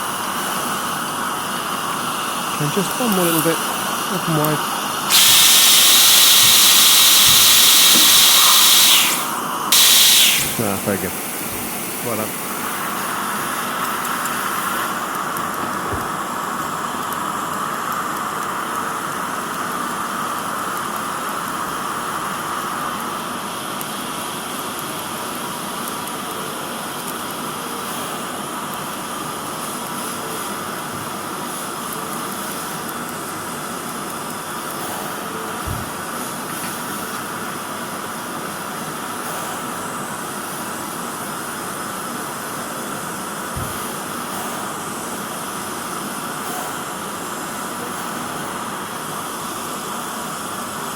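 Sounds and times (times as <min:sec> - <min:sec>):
dental equipment hissing: 0:01.7 - 0:18.6, 0:34.6 - 0:36.2, 0:43.5 - 0:49.7.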